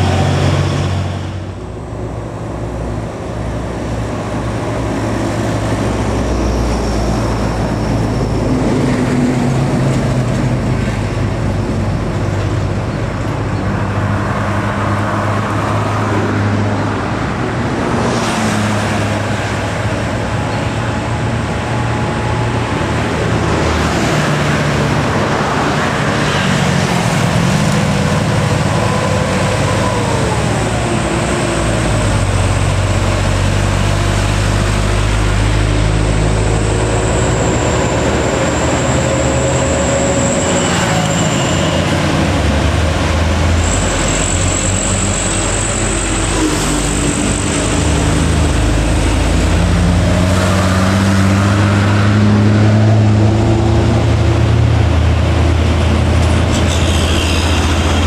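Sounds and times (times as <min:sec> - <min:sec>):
diesel truck engines droning: 0:00.0 - 0:58.0.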